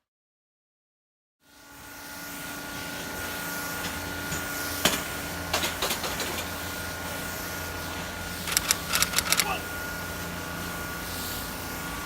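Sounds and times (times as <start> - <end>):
steady mechanical hum: 1.6 - 12.0
sharp clicks and taps: 8.5 - 9.5.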